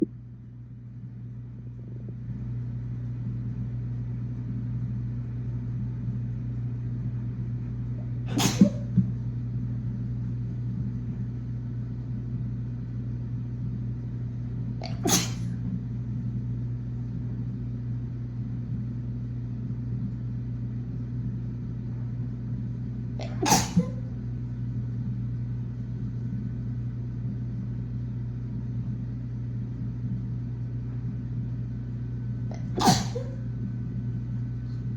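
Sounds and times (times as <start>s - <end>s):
steady low hum: 0.0s - 34.9s
woman sneezing: 8.3s - 8.9s, 14.8s - 15.5s, 23.2s - 24.1s, 32.5s - 33.4s.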